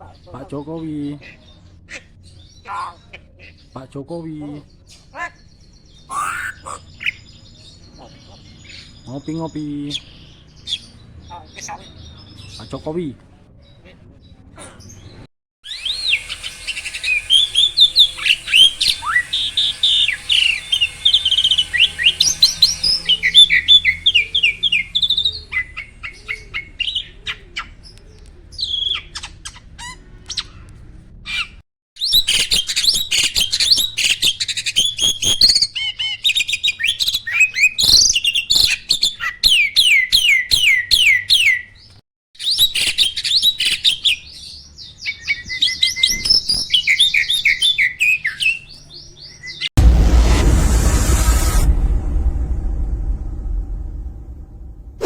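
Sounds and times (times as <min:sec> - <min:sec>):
starling singing: 0:15.7 - 0:27.7.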